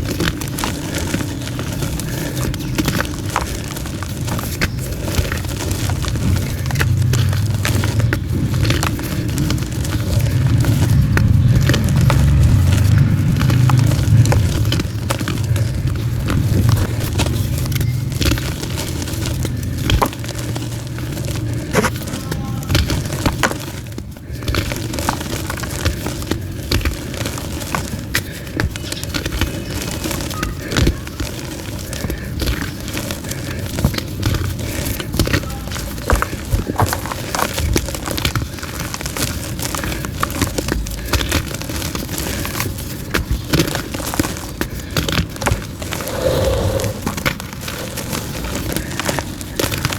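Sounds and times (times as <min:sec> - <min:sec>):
low rumble: 0:45.8 - 0:48.1.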